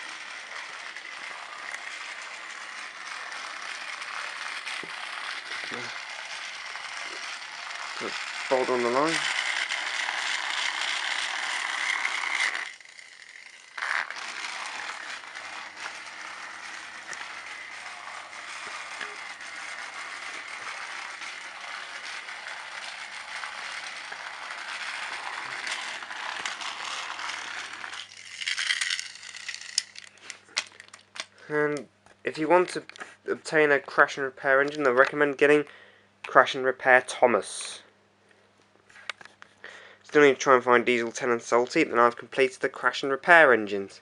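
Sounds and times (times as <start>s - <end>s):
toy train motor whirring: 0.0s - 31.3s.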